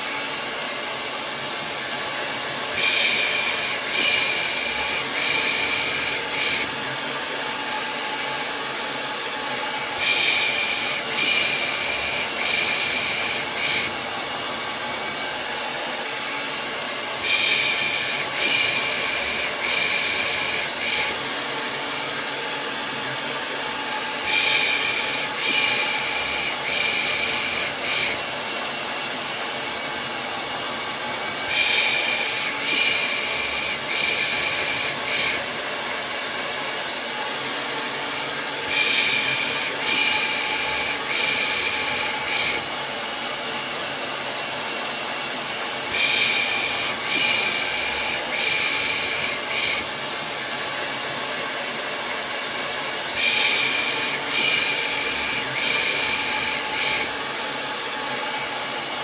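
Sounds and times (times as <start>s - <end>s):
hair dryer running: 0.0s - 59.0s.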